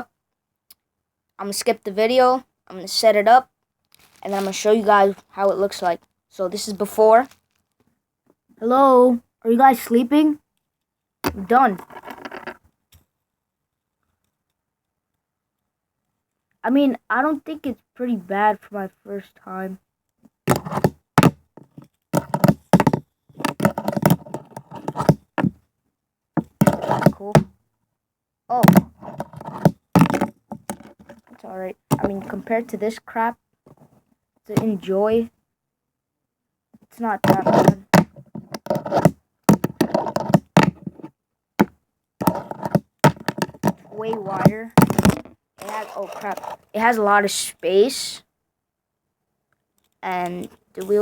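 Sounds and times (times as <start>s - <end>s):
wooden fingerboard knocking: 41.6s - 45.3s.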